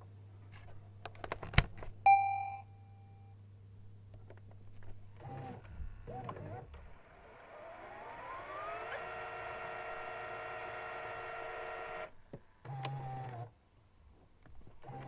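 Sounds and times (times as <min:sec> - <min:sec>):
camcorder tape motor whirring: 0:05.2 - 0:13.5.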